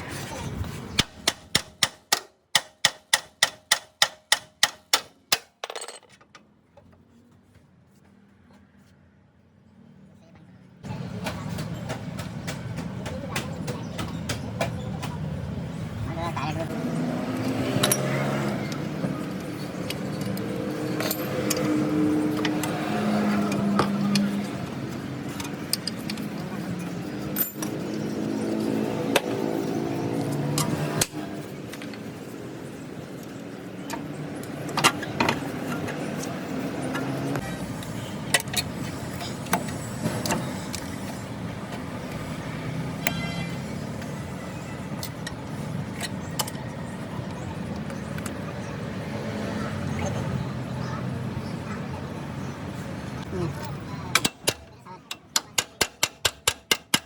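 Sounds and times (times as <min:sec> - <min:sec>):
sharp metallic clicks and knocks: 0:01.0 - 0:06.9, 0:17.3 - 0:22.8, 0:23.4 - 0:26.5, 0:33.2 - 0:42.3, 0:54.1 - 0:57.0.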